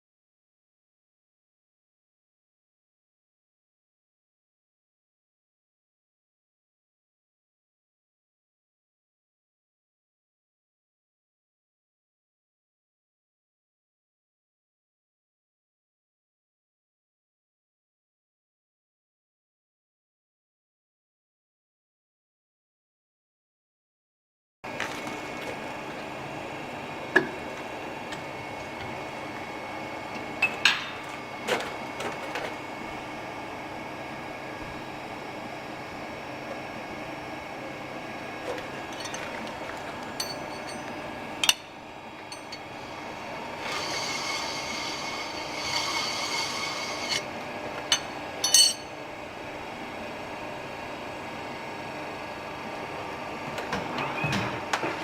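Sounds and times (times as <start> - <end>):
metallic clinks and knocks: 40.2 - 40.9
ringing metallic clinks: 48.4 - 48.9.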